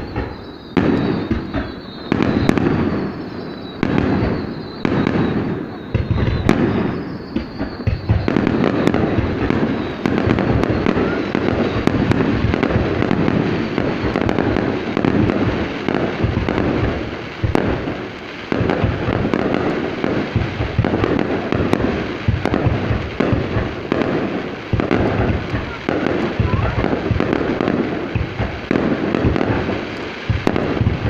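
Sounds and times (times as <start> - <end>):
fireworks bangs: 0.0 - 31.0
rumble and crackle of bursts: 0.0 - 31.0.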